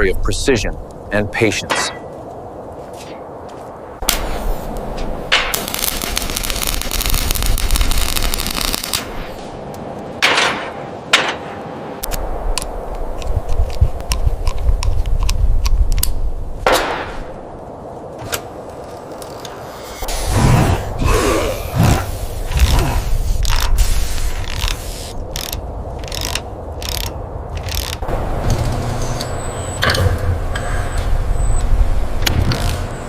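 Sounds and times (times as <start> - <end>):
dense crackle: 5.4 - 9.3.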